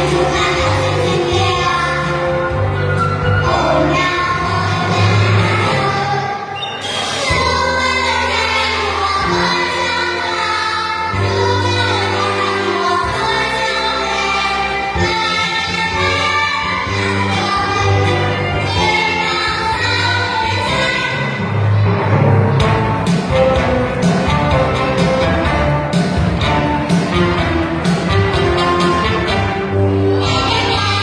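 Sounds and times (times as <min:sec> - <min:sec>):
instrumental accompaniment with bass: 0:00.0 - 0:31.0
group singing children's song: 0:07.0 - 0:21.4.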